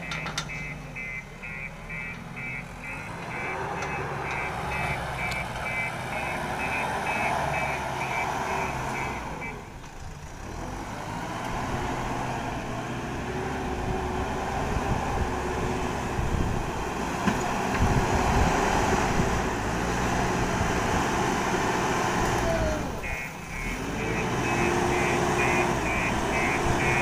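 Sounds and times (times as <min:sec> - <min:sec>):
metallic knocks: 0:00.0 - 0:00.8
reversing alarm beeping: 0:00.0 - 0:09.7, 0:23.0 - 0:27.0
diesel engine running: 0:00.0 - 0:27.0.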